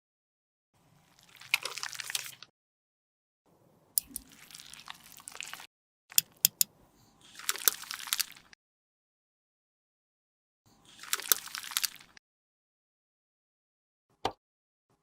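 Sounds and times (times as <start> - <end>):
sharp clicks: 6.1 - 6.7.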